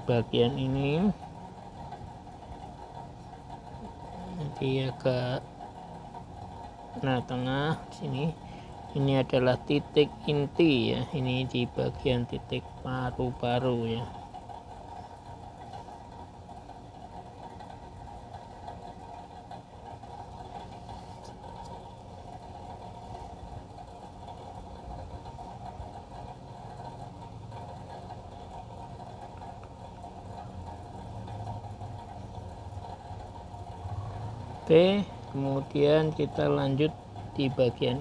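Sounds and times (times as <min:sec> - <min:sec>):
mechanical hum with constant tones: 0:00.0 - 0:38.0.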